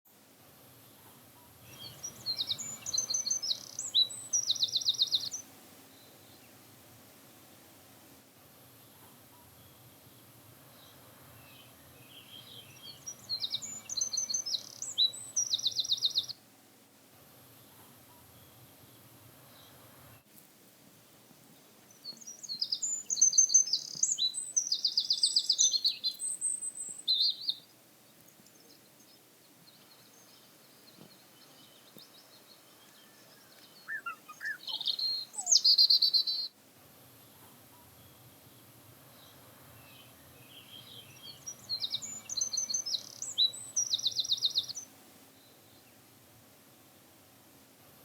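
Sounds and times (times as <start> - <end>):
songbird chirping and trilling: 0.8 - 6.6, 8.8 - 16.4, 21.8 - 36.6, 37.2 - 46.0.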